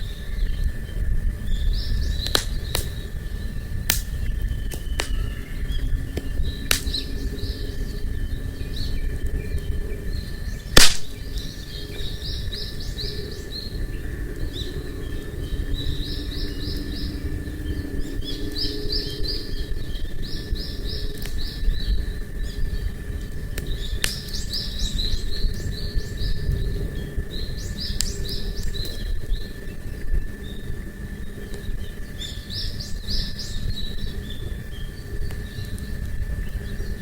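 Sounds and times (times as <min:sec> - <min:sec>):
campfire crackling: 0:00.0 - 0:18.6, 0:19.2 - 0:37.0
songbird singing: 0:00.0 - 0:37.0
loud sharp pop: 0:10.8 - 0:11.2.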